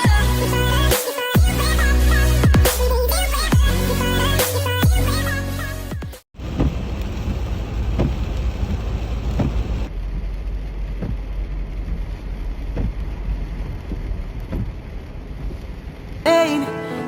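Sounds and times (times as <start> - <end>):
freezing rain hissing: 6.4 - 9.9.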